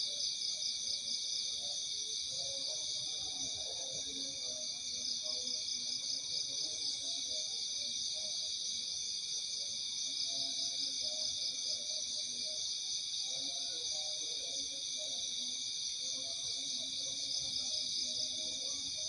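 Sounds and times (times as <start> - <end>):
crickets and insects chirping: 0.0 - 19.0.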